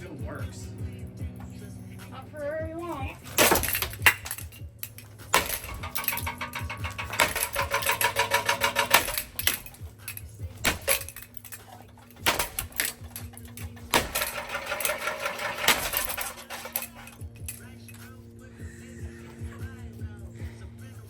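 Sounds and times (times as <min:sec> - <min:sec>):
broken parts clattering: 0:03.0 - 0:18.4
sharp knocks and cracks: 0:03.3 - 0:18.2.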